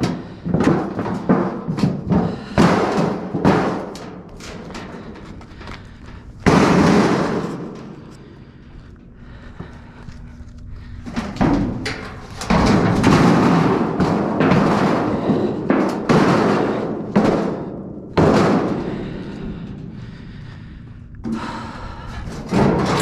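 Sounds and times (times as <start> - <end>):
metal crashes and bangs in dumpster: 0.0 - 8.1, 11.0 - 20.0, 22.3 - 23.0.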